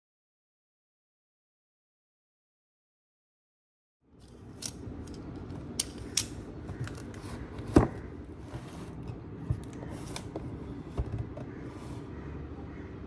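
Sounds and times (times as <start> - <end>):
low steady hum: 4.1 - 13.0.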